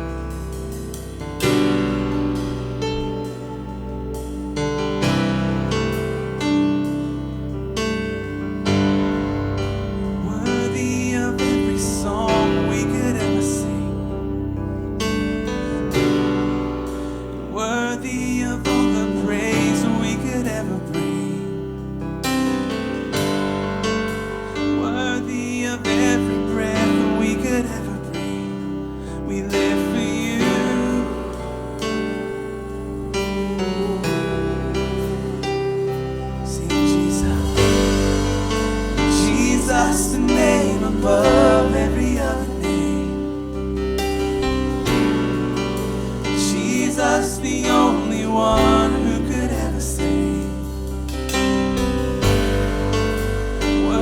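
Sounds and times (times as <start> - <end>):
bass guitar: 0.0 - 54.0
piano: 0.0 - 54.0
person singing: 8.7 - 14.5, 16.9 - 22.0, 24.4 - 51.2, 51.8 - 54.0.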